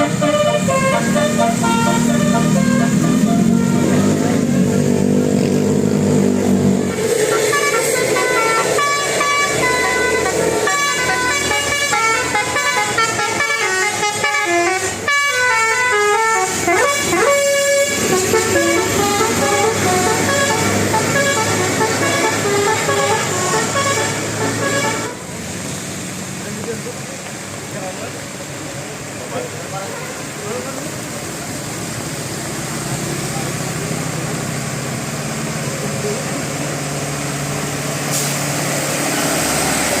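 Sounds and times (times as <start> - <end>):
multi-tone bus horn melody: 0.0 - 25.4.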